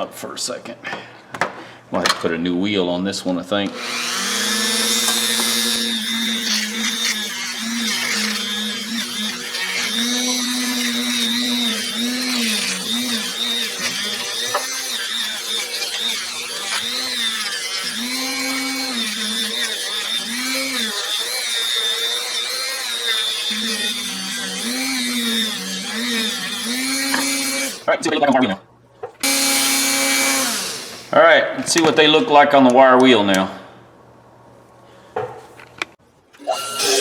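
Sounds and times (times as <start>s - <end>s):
rotary tool grinding metal: 3.7s - 27.9s, 29.2s - 31.1s, 36.4s - 37.0s.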